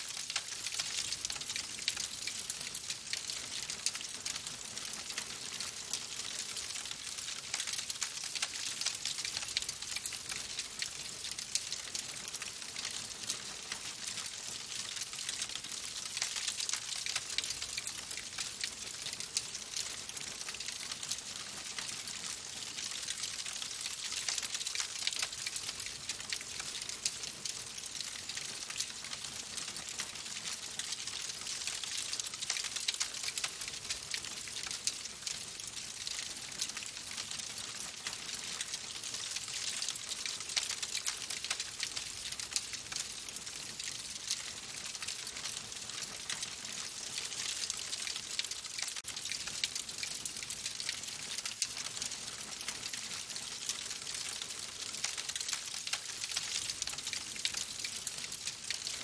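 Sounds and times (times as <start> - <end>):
wood fire crackling: 0.1 - 29.1, 29.8 - 59.0.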